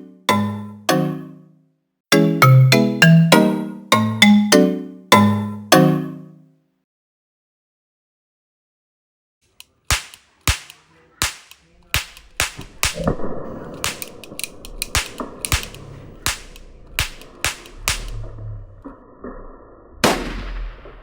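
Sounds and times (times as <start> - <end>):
gunshots: 9.8 - 18.4, 20.0 - 21.0.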